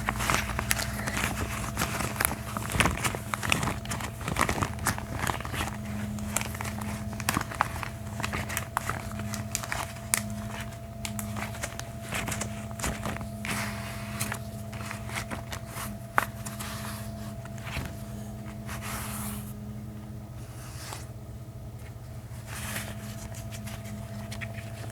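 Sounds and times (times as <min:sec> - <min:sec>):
gloved hands rubbing: 0:00.0 - 0:19.5
steady low hum: 0:00.0 - 0:24.9.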